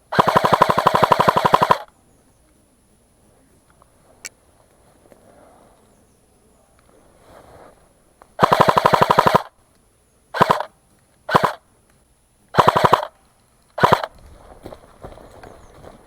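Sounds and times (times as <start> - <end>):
airsoft gun firing full auto: 0.1 - 1.9, 8.4 - 9.5, 10.4 - 10.7, 11.3 - 11.6, 12.6 - 13.2, 13.8 - 14.2.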